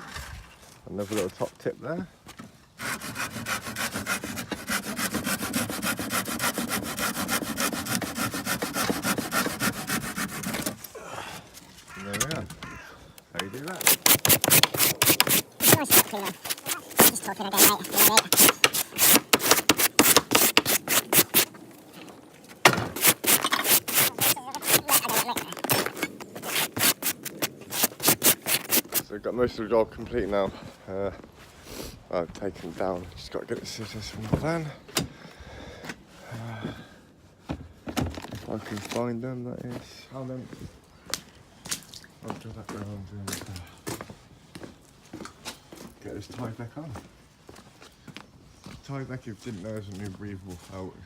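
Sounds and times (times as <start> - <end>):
knocking and scraping of roof tiles: 2.3 - 10.9, 13.4 - 29.1, 37.4 - 39.0
saw cutting through wood: 2.8 - 10.8, 13.6 - 21.6, 22.7 - 29.1.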